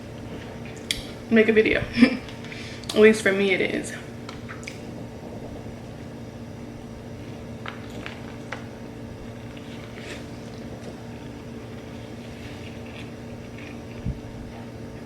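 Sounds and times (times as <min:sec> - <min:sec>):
low electrical hum: 0:00.0 - 0:15.0
chewing food close up: 0:07.3 - 0:15.0.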